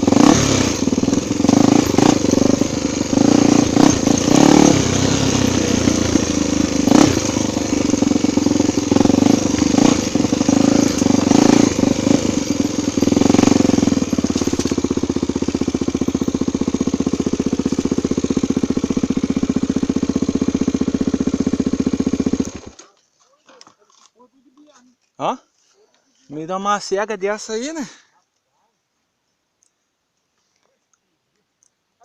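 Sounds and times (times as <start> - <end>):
engine knocks: 0.0 - 22.7
motorcycle engine idling: 0.0 - 23.7.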